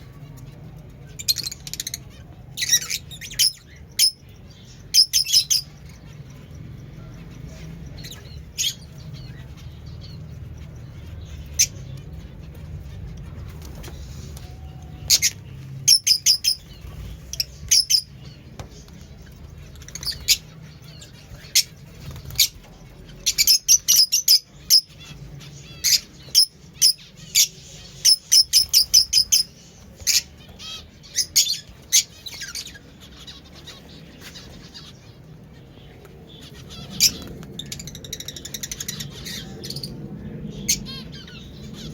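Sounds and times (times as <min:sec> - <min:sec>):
steady low hum: 0:00.0 - 0:41.9
lovebird chirps: 0:02.6 - 0:06.3, 0:14.8 - 0:18.3, 0:23.2 - 0:33.3.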